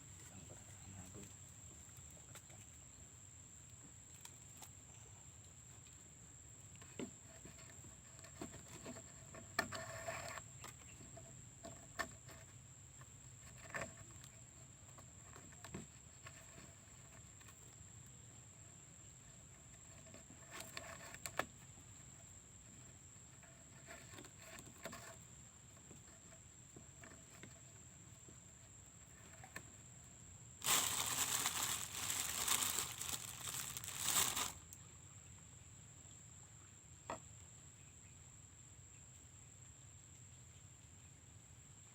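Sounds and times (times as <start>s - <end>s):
soft crinkles and clicks: 3.6s - 4.8s, 30.6s - 34.8s
loud rustling: 30.6s - 34.6s.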